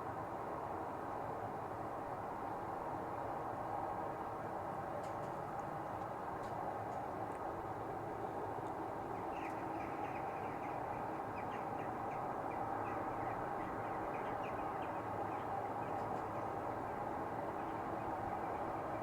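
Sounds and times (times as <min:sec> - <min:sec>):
airplanes droning overhead: 0:00.0 - 0:19.0
small birds chirping: 0:09.1 - 0:16.6.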